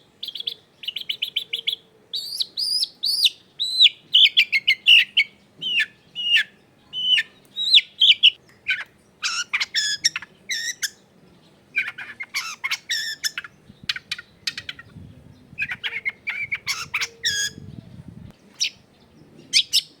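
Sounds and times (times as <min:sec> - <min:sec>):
bird chattering and whistling: 0:00.2 - 0:11.0, 0:11.7 - 0:20.0.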